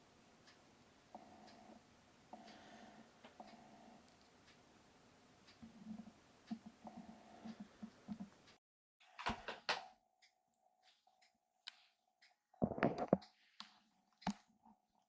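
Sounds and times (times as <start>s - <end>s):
faint steady hum: 0.0s - 8.6s
soft knocks and thumps: 12.6s - 13.2s.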